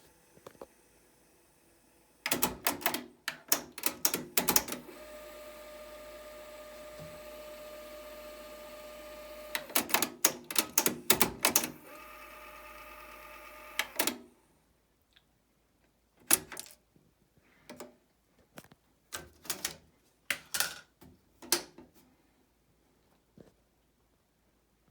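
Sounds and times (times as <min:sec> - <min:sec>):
cassette deck motor whine: 0:00.0 - 0:02.0, 0:04.6 - 0:10.0, 0:10.9 - 0:14.4
mechanical clicks and clunks: 0:02.2 - 0:14.3.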